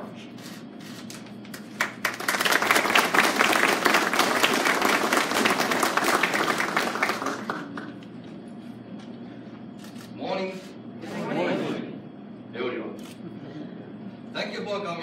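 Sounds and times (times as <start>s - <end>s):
audience applauding: 1.6s - 8.1s.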